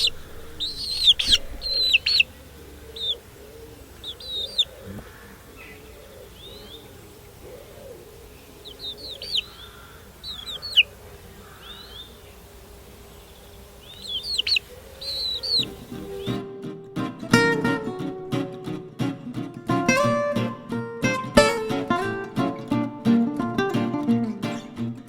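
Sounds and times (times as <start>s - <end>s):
birds chirping: 0.0s - 19.2s.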